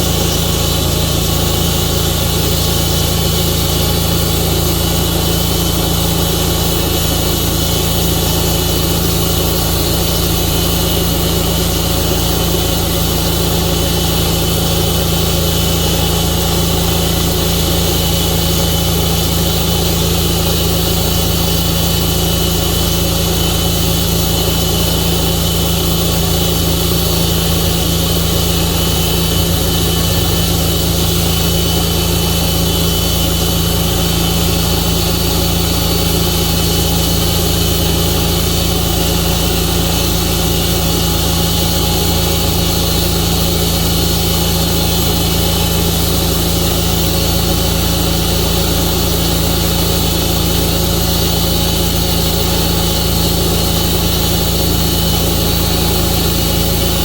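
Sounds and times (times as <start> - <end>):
sawmill engine running: 0.0 - 57.0.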